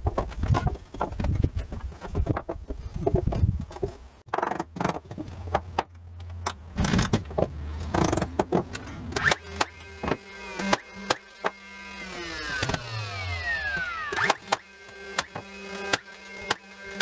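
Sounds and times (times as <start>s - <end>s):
carpentry knocks and clatter: 0.0s - 11.6s.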